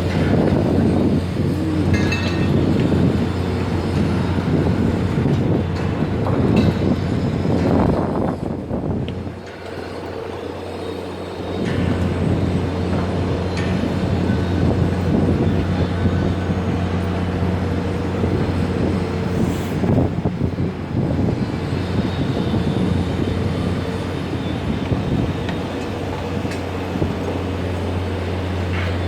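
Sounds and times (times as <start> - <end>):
noisy drone: 0.0 - 7.3
crane machinery humming: 0.0 - 29.0.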